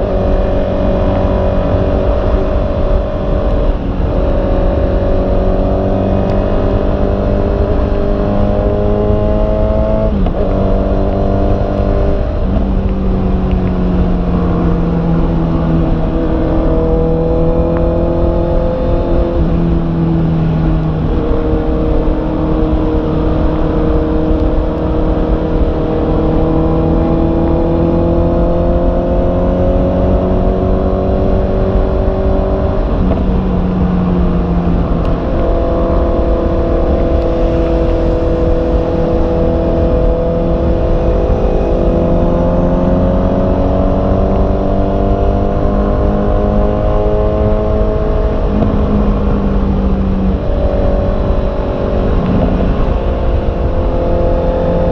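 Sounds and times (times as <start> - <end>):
motorcycle engine accelerating: 0.0 - 54.9
wind and road noise: 0.0 - 54.9.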